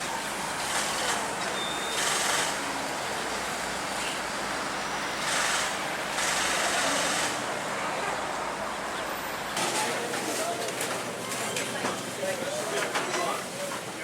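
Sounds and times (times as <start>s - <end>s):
city street traffic hiss: 0.0s - 14.0s.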